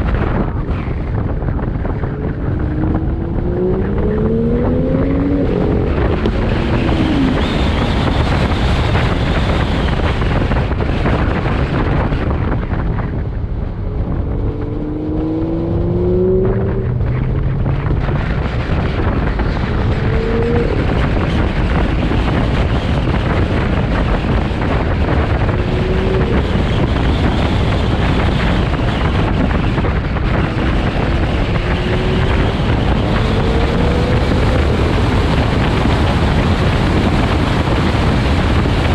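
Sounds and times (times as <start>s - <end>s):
car engine accelerating: 0.0s - 38.9s
road noise: 0.0s - 38.9s
wind noise on microphone: 0.0s - 38.9s.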